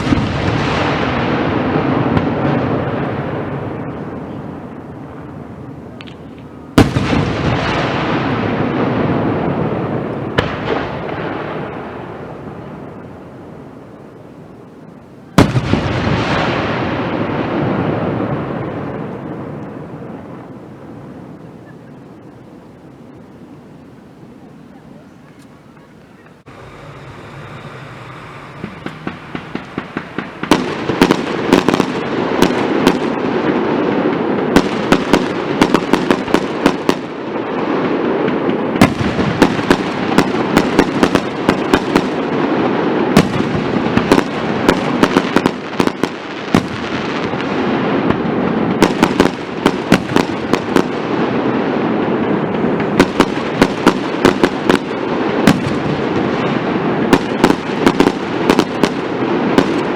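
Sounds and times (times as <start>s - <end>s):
fireworks bangs and crackling: 0.0s - 59.9s.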